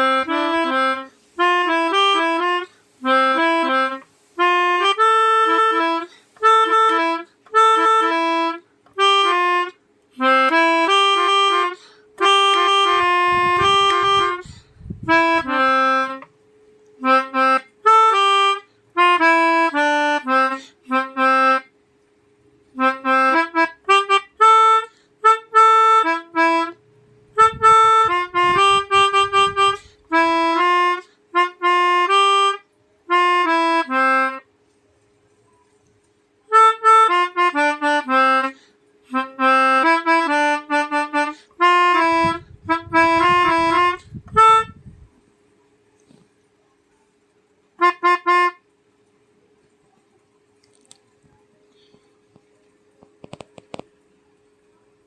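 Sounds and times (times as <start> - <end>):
melodica playing short phrases: 0.0 - 16.3, 17.0 - 21.7, 22.7 - 34.6, 36.4 - 44.8, 47.8 - 48.7.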